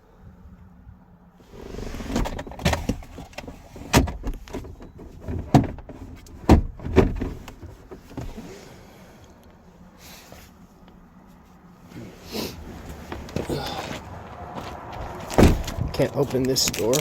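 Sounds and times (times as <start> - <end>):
sharp clunks and knocks: 14.8 - 16.0.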